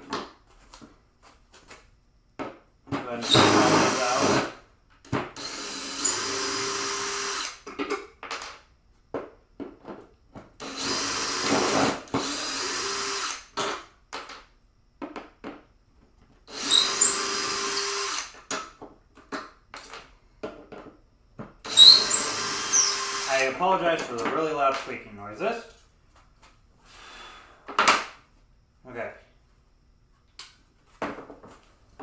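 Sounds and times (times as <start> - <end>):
high squeaking of screws: 3.2 - 4.4, 16.5 - 18.3, 21.7 - 23.6
power drill running: 3.2 - 4.6, 5.4 - 7.6, 10.6 - 13.6, 16.5 - 18.4, 21.7 - 23.7.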